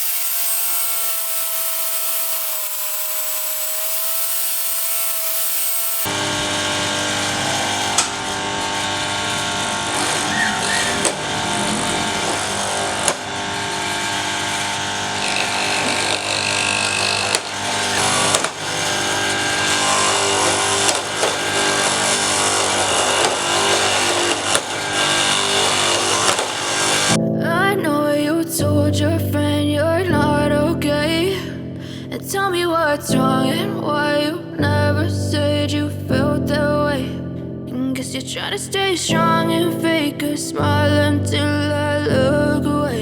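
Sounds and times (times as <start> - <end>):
power tool motor grinding: 0.0 - 27.2.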